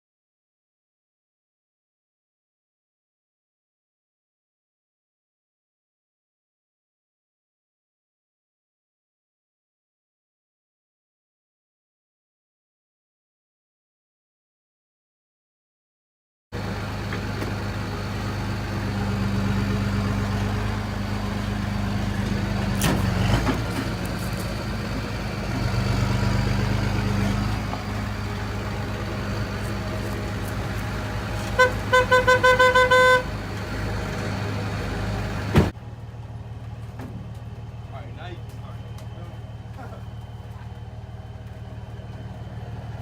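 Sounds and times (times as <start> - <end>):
vehicle engine running: 16.6 - 43.0
horn short beeps: 31.6 - 33.3.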